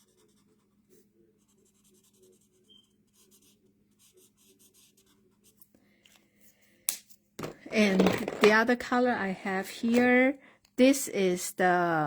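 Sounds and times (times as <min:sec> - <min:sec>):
colouring tool scratching on card: 0:00.0 - 0:05.6.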